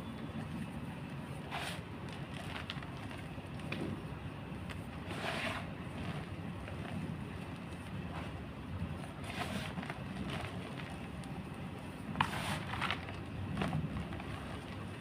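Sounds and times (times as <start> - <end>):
chalk crunching: 1.4 - 3.7, 4.7 - 11.4, 12.1 - 15.0.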